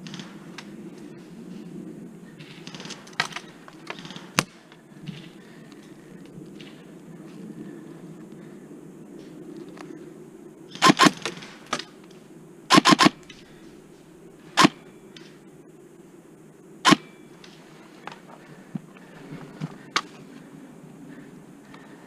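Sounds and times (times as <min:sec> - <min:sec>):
airsoft gun shots: 0:10.7 - 0:11.4, 0:12.7 - 0:13.2, 0:14.6 - 0:14.8.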